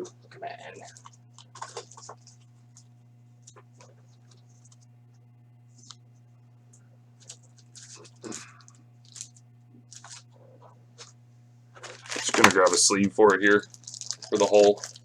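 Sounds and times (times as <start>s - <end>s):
steady electrical hum: 0.0s - 15.0s
trading cards clicking and rustling: 0.7s - 2.8s, 7.2s - 8.4s, 9.1s - 11.1s, 11.8s - 15.0s.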